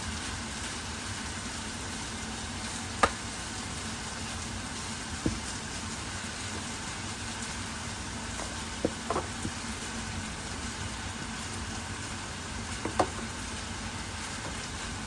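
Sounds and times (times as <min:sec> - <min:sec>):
chicken sizzling in a pan: 0:00.0 - 0:15.0
light knocks: 0:08.4 - 0:09.6.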